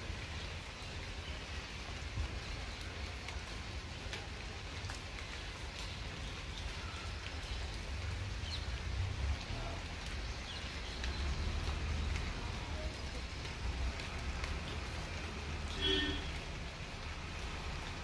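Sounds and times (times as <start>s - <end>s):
outdoor hiss: 5.3s - 18.0s.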